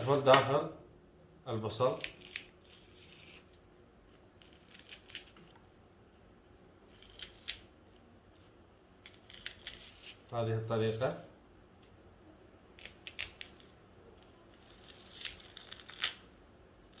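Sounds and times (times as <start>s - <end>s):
knife cutting and scraping onion: 1.7s - 5.6s, 6.8s - 11.1s, 12.7s - 17.0s.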